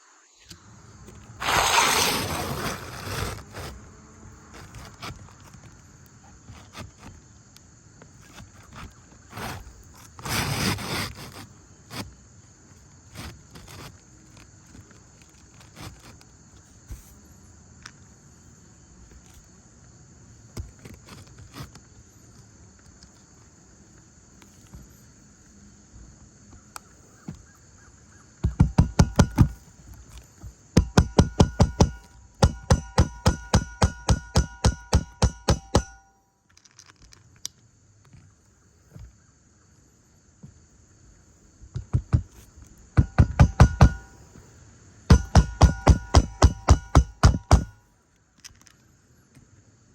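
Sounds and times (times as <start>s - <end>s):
shingle rustling: 1.0s - 7.3s, 8.0s - 18.0s, 20.4s - 39.1s
hammer striking roofing nails: 28.4s - 29.6s, 30.8s - 36.1s, 41.7s - 42.4s, 43.0s - 44.2s, 45.1s - 47.8s.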